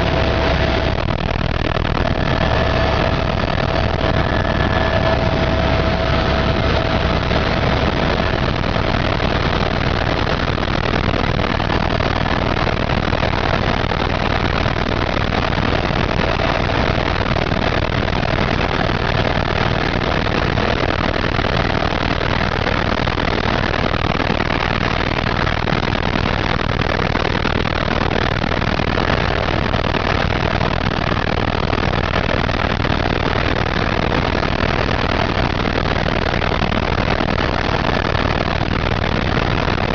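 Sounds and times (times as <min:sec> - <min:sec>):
helicopter engine and rotor: 0:00.0 - 0:22.1.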